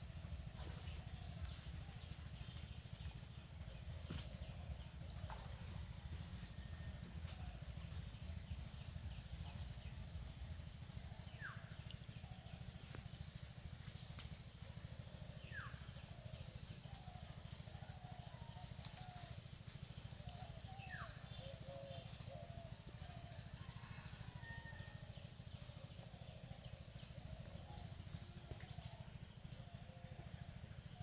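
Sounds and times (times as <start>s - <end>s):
steady low rumble: 0.0s - 23.6s.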